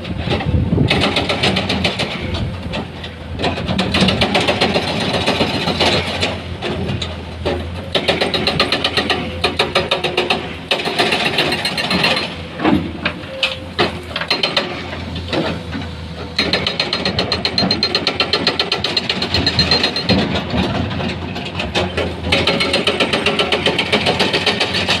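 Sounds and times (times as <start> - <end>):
excavator diesel engine clatter: 0.0 - 25.0.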